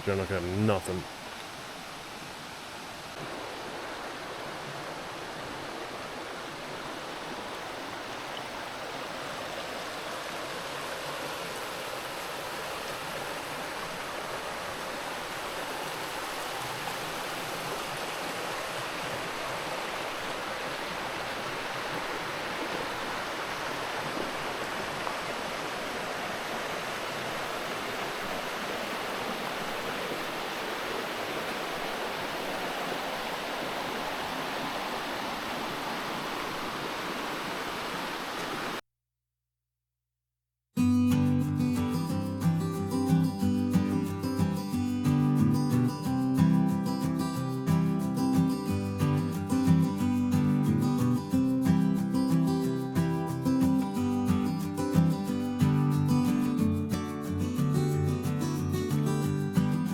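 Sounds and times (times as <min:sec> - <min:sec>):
creek water rushing over rocks: 0:00.0 - 0:38.8.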